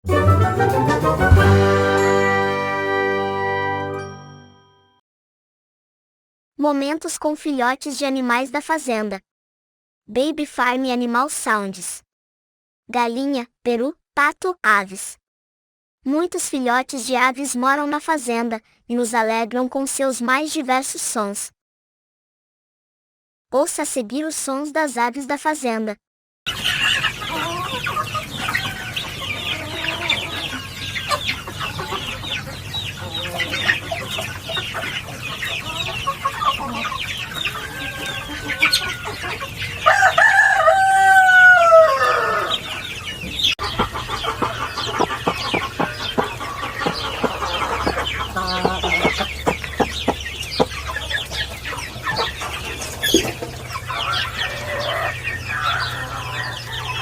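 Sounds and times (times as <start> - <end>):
chickens clucking: 26.5 - 57.0
rooster crowing: 37.6 - 39.0, 39.8 - 42.7.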